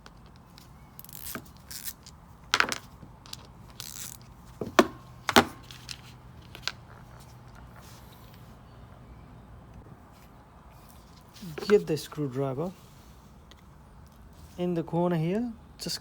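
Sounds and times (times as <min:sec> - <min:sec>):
tools clicking and clattering: 0:00.0 - 0:07.3.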